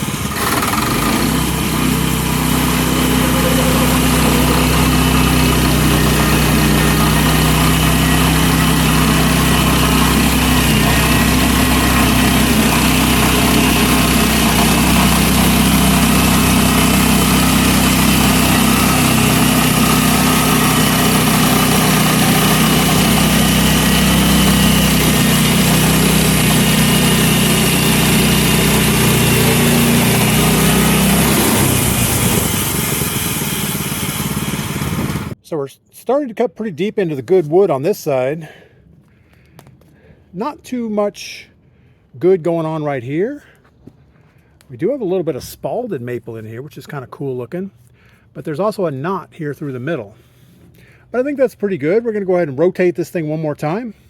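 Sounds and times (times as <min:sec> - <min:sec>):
saw blade cutting log: 0:00.0 - 0:35.4
sawmill engine running: 0:00.0 - 0:35.4.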